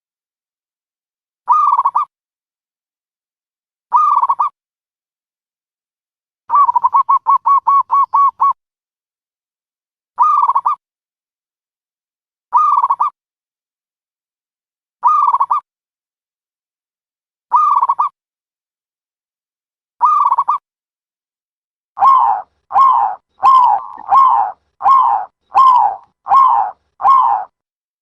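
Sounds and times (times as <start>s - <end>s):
dove cooing: 22.0s - 27.5s.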